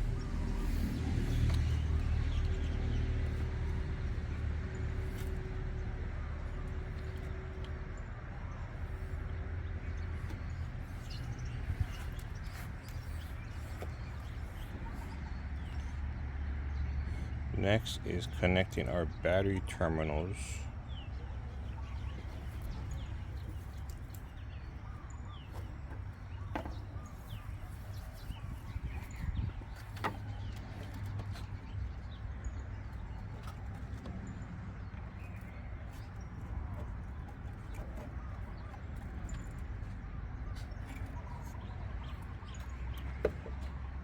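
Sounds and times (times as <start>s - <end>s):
steady low rumble: 0.0s - 16.0s
birds chirping: 0.0s - 44.0s.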